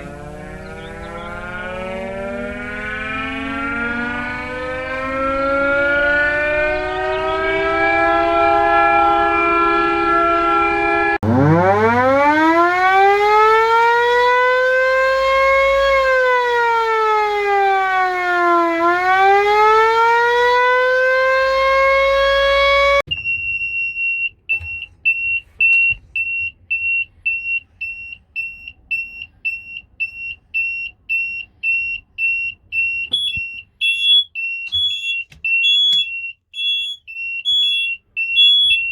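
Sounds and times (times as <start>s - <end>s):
air raid siren wailing: 0.0s - 23.1s, 36.6s - 38.9s
siren steady high note: 0.0s - 23.1s, 33.0s - 38.9s
high electronic alarm beep: 29.0s - 38.9s.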